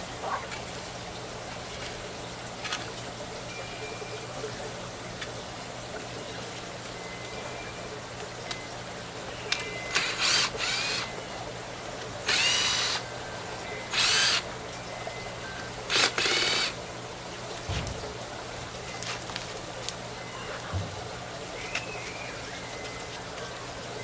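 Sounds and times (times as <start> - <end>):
power drill whining: 9.9 - 11.1, 12.3 - 13.0, 13.9 - 14.4, 15.9 - 16.8
dull thud: 17.7 - 18.0.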